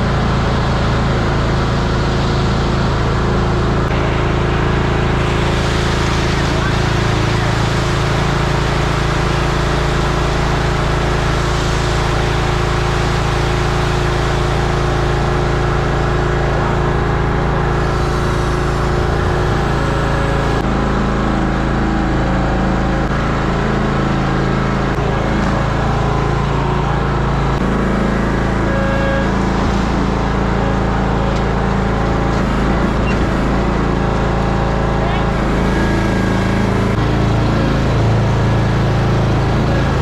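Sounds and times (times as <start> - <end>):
truck engine running: 0.0 - 40.0.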